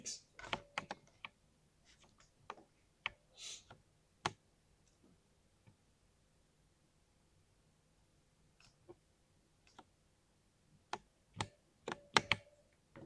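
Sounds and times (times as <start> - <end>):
mechanical keyboard typing: 0.4 - 1.3, 11.4 - 12.5.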